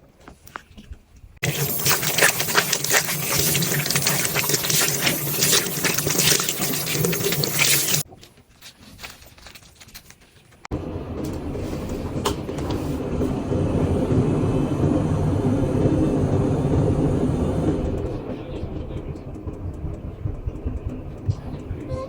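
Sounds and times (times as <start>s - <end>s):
washing machine drum rumbling: 10.7s - 22.0s.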